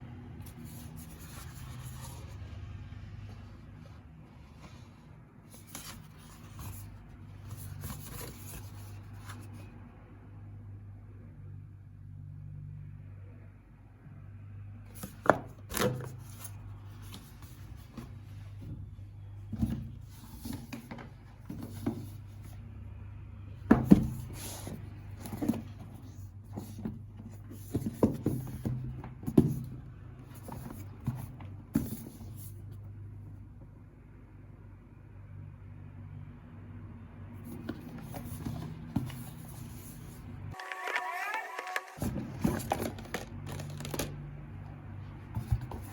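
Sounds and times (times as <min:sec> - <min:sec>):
box being handled and opened: 0:14.9 - 0:22.6, 0:23.6 - 0:32.7, 0:37.4 - 0:44.2, 0:45.0 - 0:45.9.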